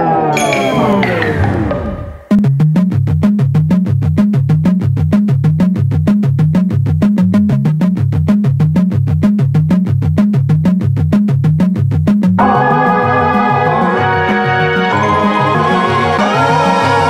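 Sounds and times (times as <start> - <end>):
electronic synthesizer music: 0.3 - 2.4.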